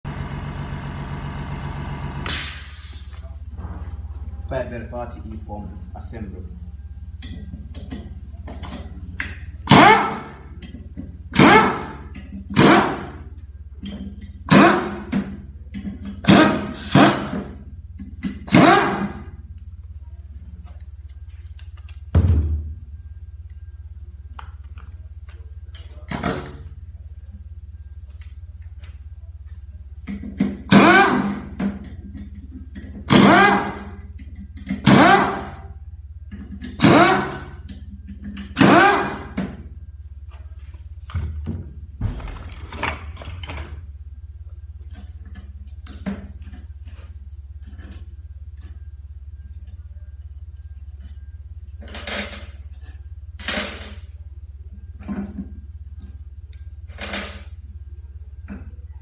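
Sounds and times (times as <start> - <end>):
power tool bursts: 2.2 - 3.2, 30.7 - 31.4, 33.1 - 33.9, 34.9 - 35.6, 36.8 - 37.5, 38.6 - 39.4
steady low hum: 2.2 - 59.0
dull thump: 41.2 - 42.6.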